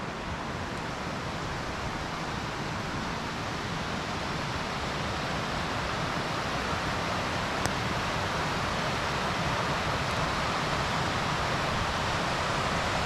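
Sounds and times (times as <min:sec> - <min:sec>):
creek running over rocks: 0:00.0 - 0:13.0.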